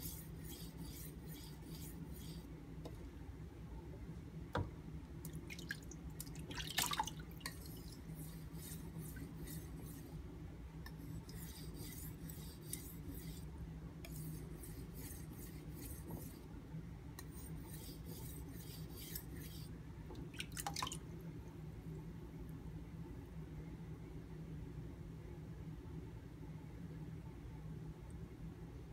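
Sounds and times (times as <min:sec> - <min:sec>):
knife scraping on water stone: 0:00.0 - 0:02.5, 0:07.4 - 0:10.2, 0:10.8 - 0:16.5, 0:17.2 - 0:19.7.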